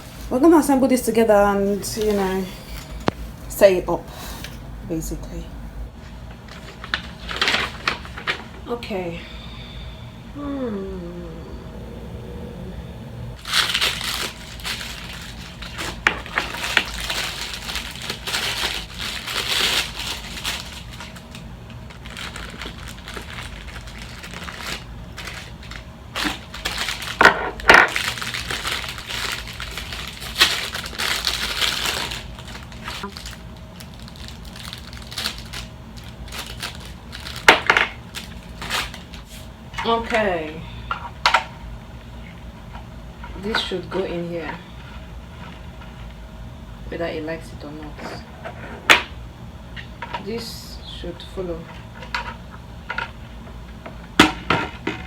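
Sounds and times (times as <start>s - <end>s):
plastic wrapping crinkling: 13.4s - 39.5s.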